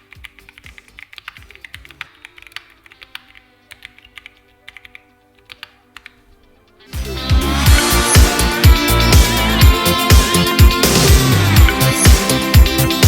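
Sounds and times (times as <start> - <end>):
mechanical keyboard typing: 0.0 - 6.2
quiet background music: 0.0 - 13.0.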